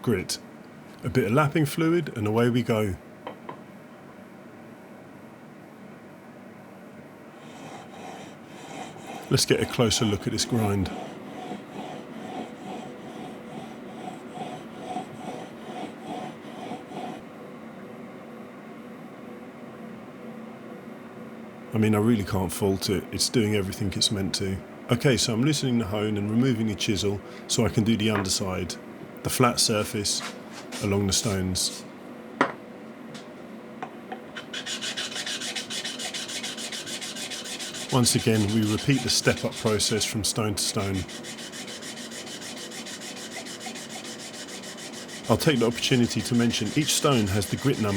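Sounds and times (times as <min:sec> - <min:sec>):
chisel rasping on sharpening stone: 0:10.0 - 0:17.1, 0:34.4 - 0:47.9.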